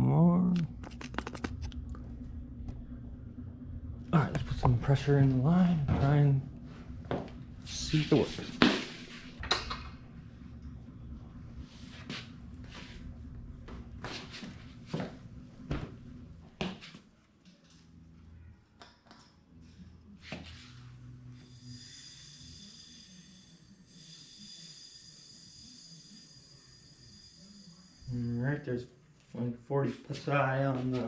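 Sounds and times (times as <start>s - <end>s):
air hose hissing and whistling: 21.4s - 28.6s.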